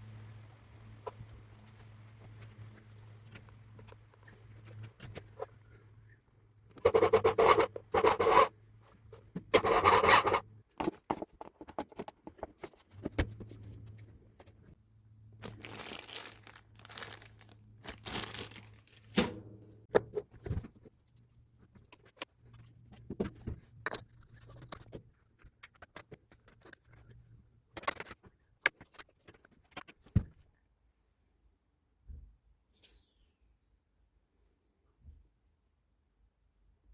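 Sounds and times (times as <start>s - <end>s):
scraping and rubbing: 6.8s - 14.7s.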